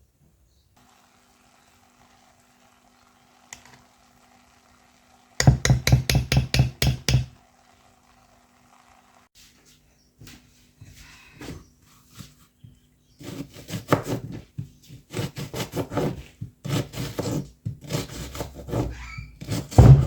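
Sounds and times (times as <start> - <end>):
loud knocks: 19.7 - 20.0.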